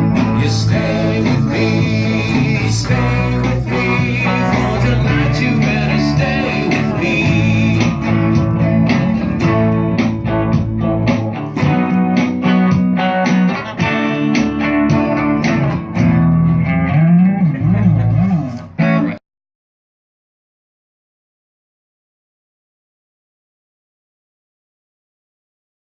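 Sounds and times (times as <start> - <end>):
drum hits: 0.0 - 15.8
bass guitar: 0.0 - 19.2
electric guitar: 0.0 - 19.2.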